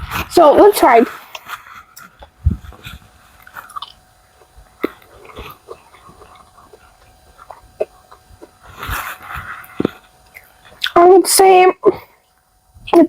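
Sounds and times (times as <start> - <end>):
person chewing food: 1.3 - 11.0.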